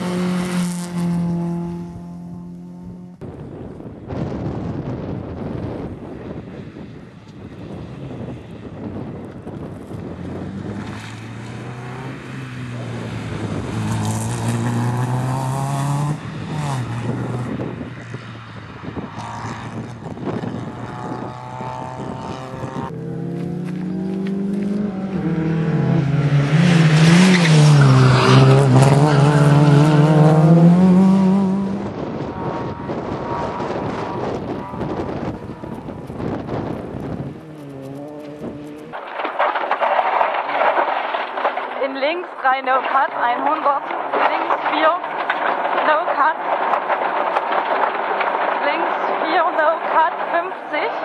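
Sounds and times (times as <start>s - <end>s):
car engine accelerating hard: 20.5s - 38.9s.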